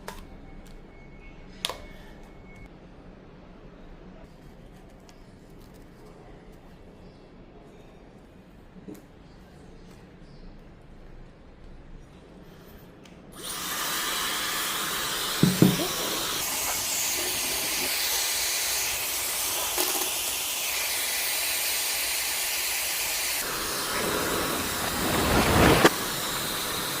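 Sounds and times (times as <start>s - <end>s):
hair dryer blowing: 13.4s - 27.0s.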